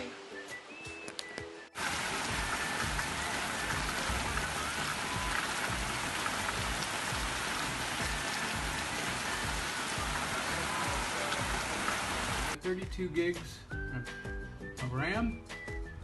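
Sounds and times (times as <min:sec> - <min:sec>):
background music: 0:00.0 - 0:16.0
heavy rain: 0:01.8 - 0:12.6.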